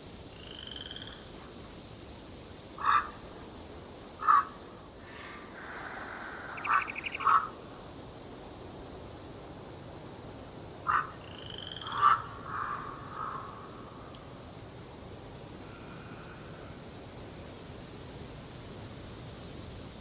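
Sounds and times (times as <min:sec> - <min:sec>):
forest hiss: 0:00.0 - 0:20.0
hoarse bird calls: 0:02.8 - 0:03.2, 0:04.2 - 0:04.6, 0:05.6 - 0:07.6, 0:10.9 - 0:14.0.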